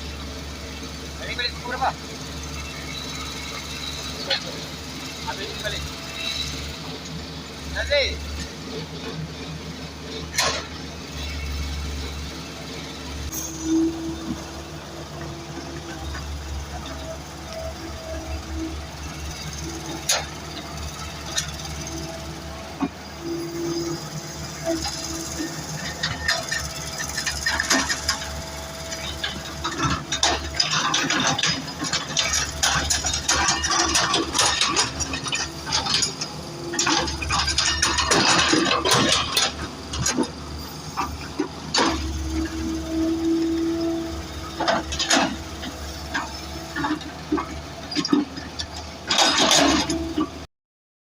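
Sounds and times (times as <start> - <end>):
engine running: 0.0 - 50.5
metallic clanks and rattles: 10.1 - 11.4, 19.3 - 23.0, 23.7 - 40.4, 41.0 - 42.7, 43.8 - 50.4
knocks and clatter: 25.8 - 40.4, 44.5 - 50.4.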